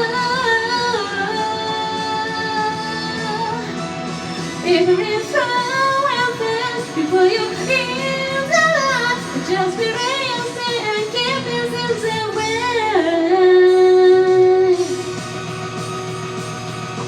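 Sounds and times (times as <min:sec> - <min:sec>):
woman singing: 0:00.0 - 0:15.2
band backing track: 0:00.0 - 0:17.0.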